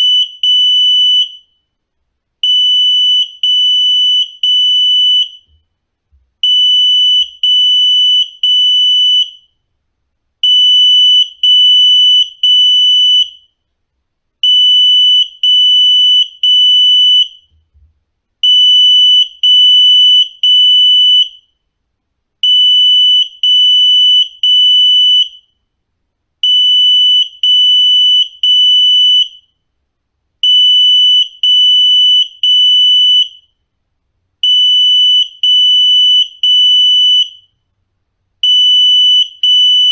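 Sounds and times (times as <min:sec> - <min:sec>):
smoke alarm beeping: 0:38.4 - 0:39.9.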